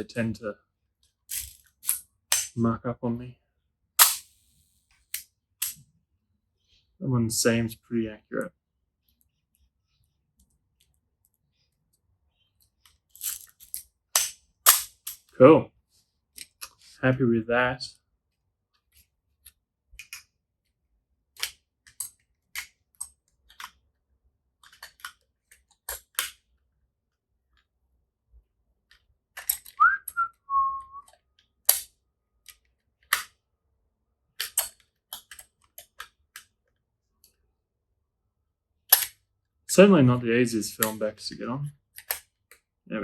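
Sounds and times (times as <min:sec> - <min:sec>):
high whistle-like squeak: 0:29.8 - 0:31.1.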